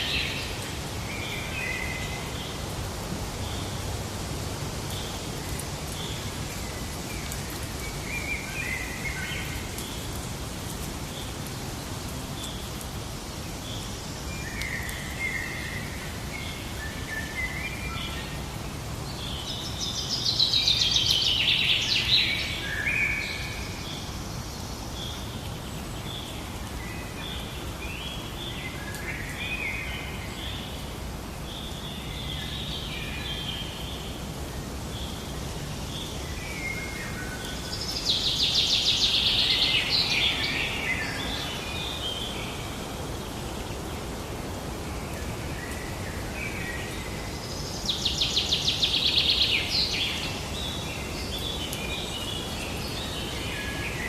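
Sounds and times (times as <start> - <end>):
background hiss: 0.0 - 54.0
wild birds calling and singing: 35.0 - 54.0.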